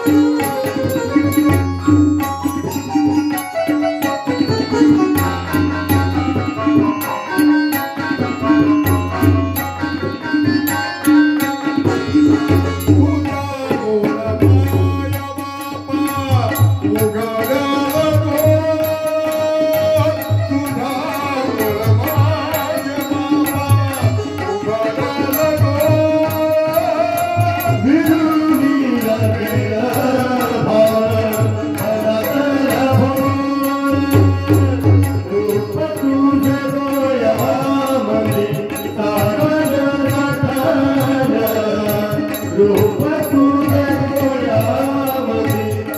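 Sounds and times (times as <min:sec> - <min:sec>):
devotional song: 0:00.0 - 0:45.9
tabla beat: 0:00.0 - 0:45.9.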